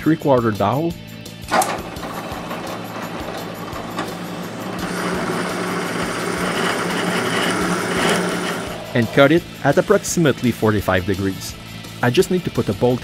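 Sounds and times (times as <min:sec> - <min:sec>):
power drill boring into wood: 0:01.5 - 0:10.6.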